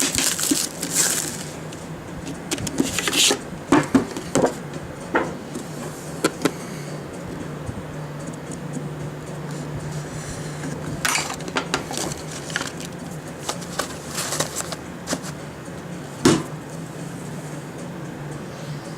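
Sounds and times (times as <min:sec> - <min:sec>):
wrapper and cardboard rustling: 0:00.0 - 0:01.6, 0:02.5 - 0:03.4, 0:11.1 - 0:15.4
steady low hum: 0:00.0 - 0:18.9
packaging clicks and taps: 0:11.1 - 0:15.4.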